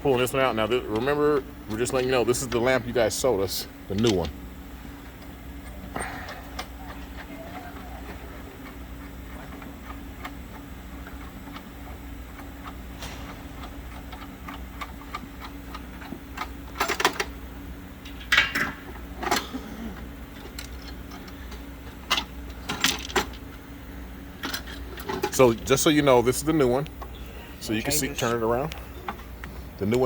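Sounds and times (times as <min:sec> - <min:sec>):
steady low hum: 0:00.0 - 0:30.0
clicks and knocks of handled parts: 0:20.3 - 0:23.5.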